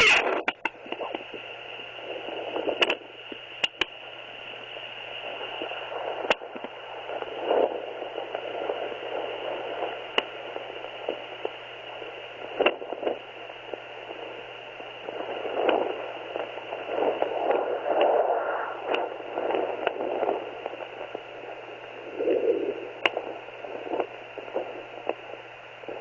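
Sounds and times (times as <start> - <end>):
doppler static hiss: 0.0 - 26.0
sharp clicks: 2.8 - 4.0.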